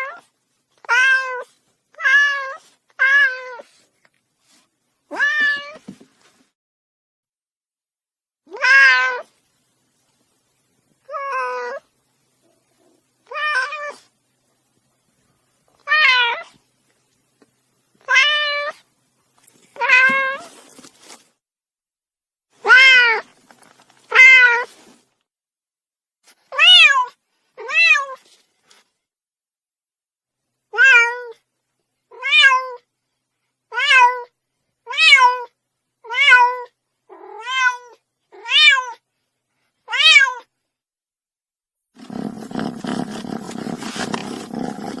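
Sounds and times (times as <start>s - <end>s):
cat meowing: 0.8s - 3.6s, 5.1s - 5.8s, 8.5s - 9.3s, 12.8s - 14.1s, 15.8s - 16.5s, 22.6s - 23.2s, 26.6s - 28.2s, 30.8s - 31.4s, 34.9s - 39.0s, 39.9s - 40.5s.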